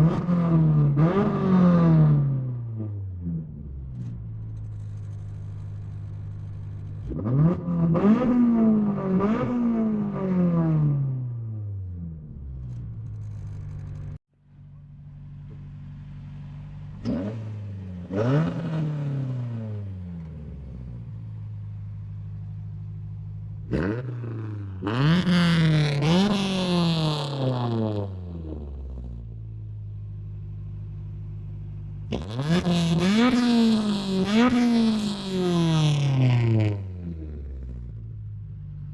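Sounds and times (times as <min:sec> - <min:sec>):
car engine idling: 0:03.5 - 0:07.2, 0:12.2 - 0:24.9, 0:28.0 - 0:38.9.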